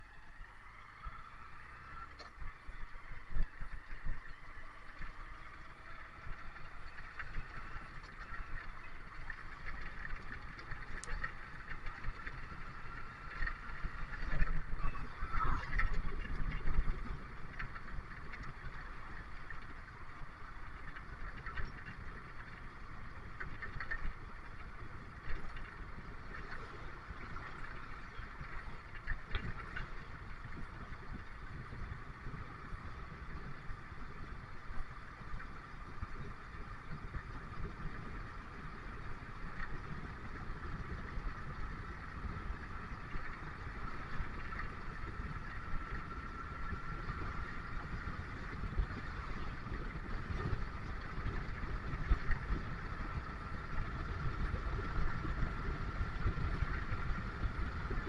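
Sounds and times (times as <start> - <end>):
bus engine drone: 0.0 - 16.2
road noise: 0.0 - 35.9.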